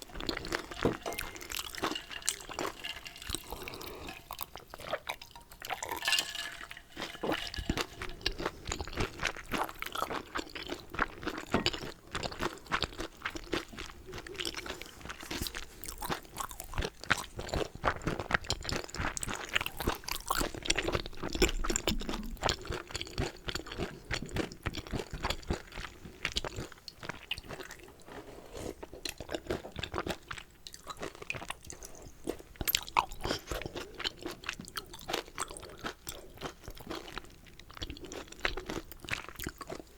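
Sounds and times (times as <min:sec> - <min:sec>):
wet crunchy chewing: 0:00.0 - 0:25.6.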